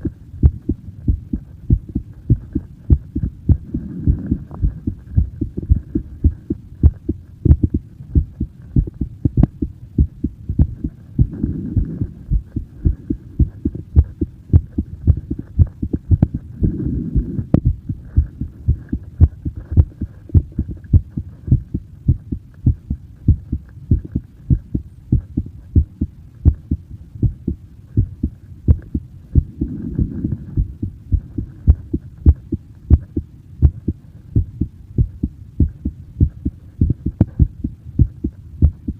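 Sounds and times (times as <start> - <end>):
heartbeat thumps: 0.0 - 38.9.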